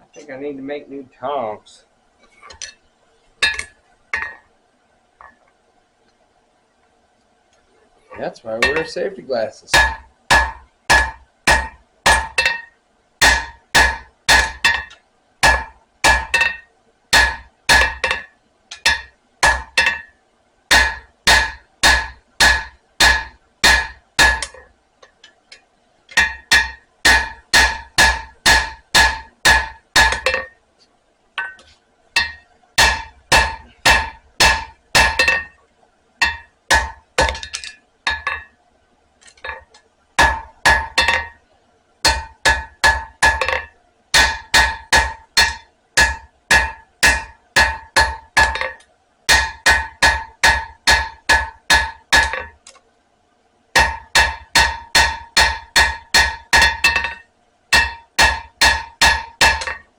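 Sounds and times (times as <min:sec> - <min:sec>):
hammer striking steel on anvil: 0:03.4 - 0:04.4, 0:08.6 - 0:09.0, 0:09.7 - 0:24.7, 0:26.2 - 0:30.6, 0:31.4 - 0:35.6, 0:36.2 - 0:38.5, 0:40.2 - 0:41.4, 0:42.0 - 0:52.6, 0:53.8 - 0:59.9.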